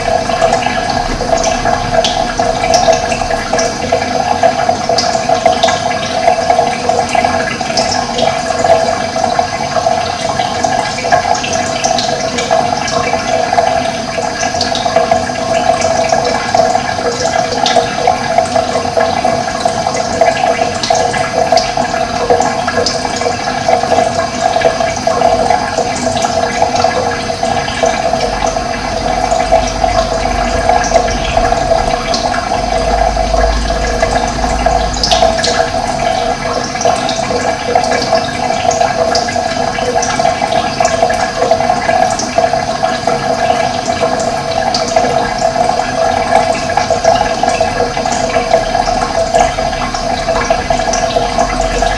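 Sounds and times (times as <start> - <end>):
running water rushing: 0.0 - 51.9
low rumble: 29.4 - 36.5.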